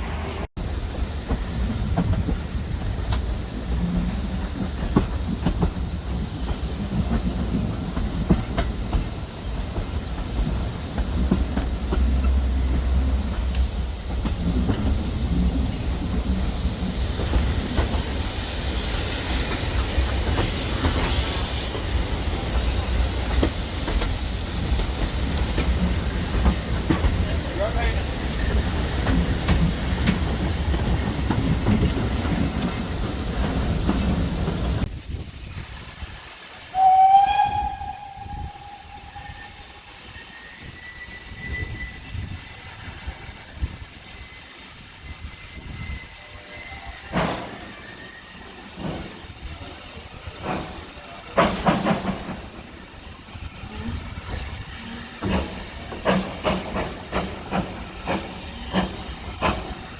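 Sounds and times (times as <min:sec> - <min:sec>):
steam locomotive whistle: 0:36.7 - 0:42.6.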